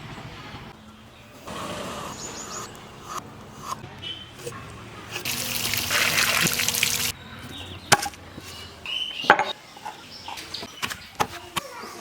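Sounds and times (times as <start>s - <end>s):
water pouring and splashing: 5.2s - 7.1s.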